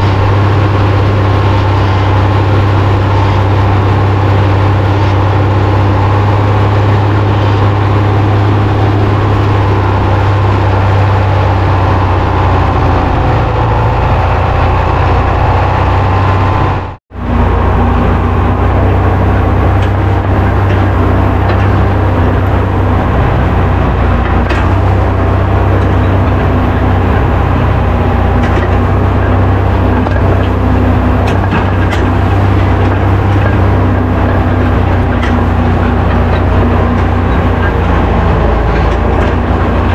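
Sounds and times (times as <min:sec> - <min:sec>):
tractor engine under load: 0:00.0 - 0:39.9.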